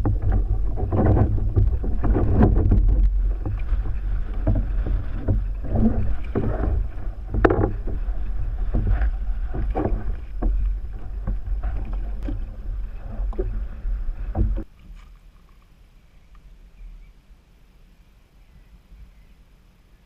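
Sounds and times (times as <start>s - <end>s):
low microphone rumble: 0.0s - 14.7s
water splashing against kayak hull: 0.0s - 15.8s.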